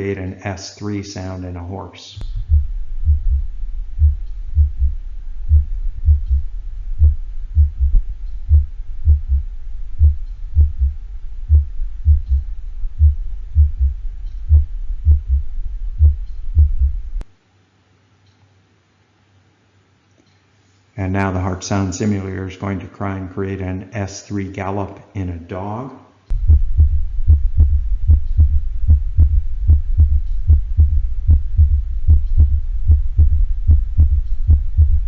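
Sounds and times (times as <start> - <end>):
steady low hum: 0.0 - 17.3, 26.2 - 35.0
simulated heartbeat thuds: 2.2 - 17.2, 26.3 - 35.0.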